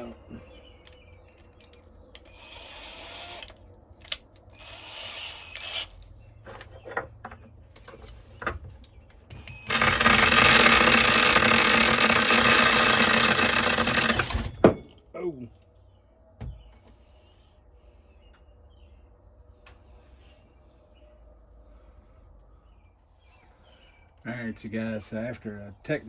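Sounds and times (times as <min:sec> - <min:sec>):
electric drill drilling: 0:02.3 - 0:03.6, 0:04.6 - 0:05.9, 0:09.3 - 0:14.7.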